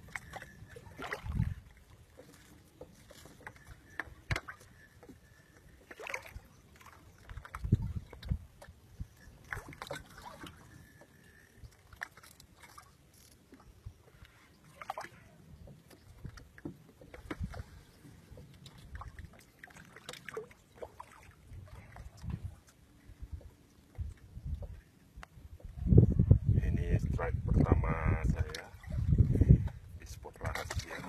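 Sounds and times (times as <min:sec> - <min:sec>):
light water sloshing: 0:00.0 - 0:25.8, 0:27.2 - 0:31.0
knocks and thumps of boat gear: 0:15.6 - 0:17.7.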